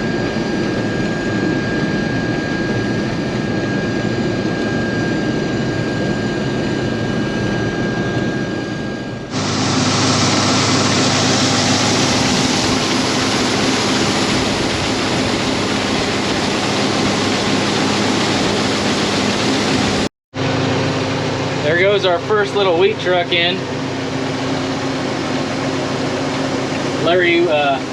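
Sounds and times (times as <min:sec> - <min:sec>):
diesel machinery running: 0:00.0 - 0:27.9
steady low hum: 0:00.0 - 0:27.9
hissy machine noise: 0:09.3 - 0:20.1, 0:24.8 - 0:27.9.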